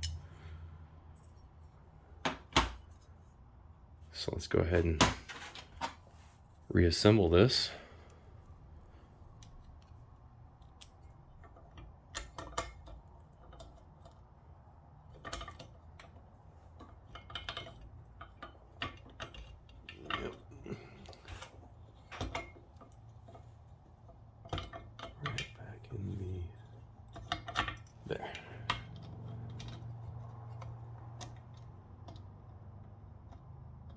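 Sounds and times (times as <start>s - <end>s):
hand plane parts clinking: 0.0s - 0.4s
low steady hum: 0.0s - 33.9s.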